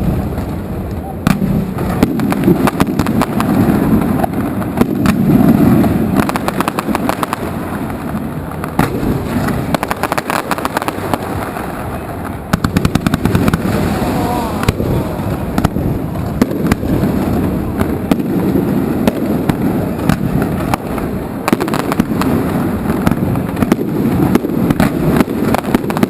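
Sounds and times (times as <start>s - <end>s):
fireworks bangs and crackles: 0.0s - 26.0s.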